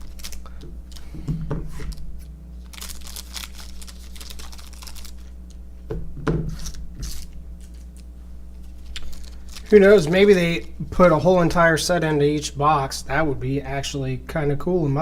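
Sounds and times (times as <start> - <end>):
trading cards and wrappers rustling: 0.0 - 5.5, 6.5 - 10.8
steady low hum: 0.0 - 15.0.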